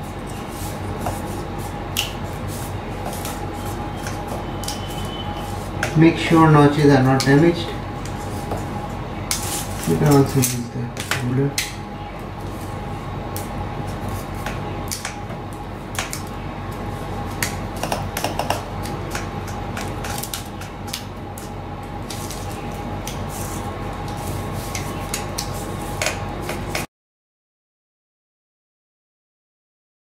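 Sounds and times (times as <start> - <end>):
steady background hum: 0.0 - 26.9.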